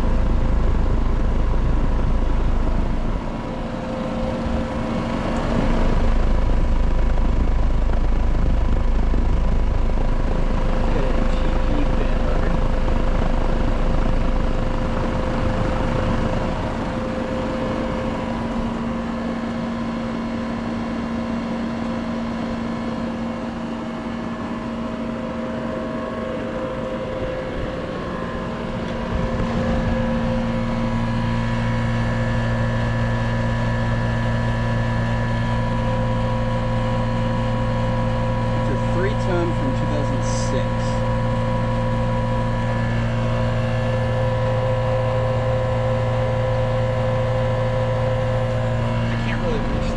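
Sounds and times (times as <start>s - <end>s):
air conditioner compressor humming: 0.0s - 49.9s
condenser fan whooshing: 26.2s - 49.9s.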